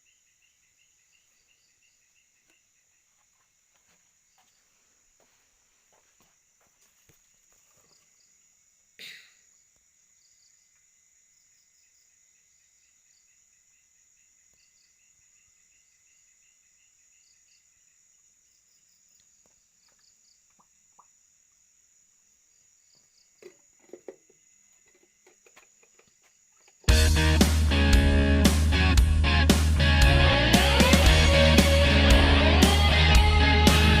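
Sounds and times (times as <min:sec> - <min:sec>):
crickets and insects calling: 0:00.0 - 0:26.9.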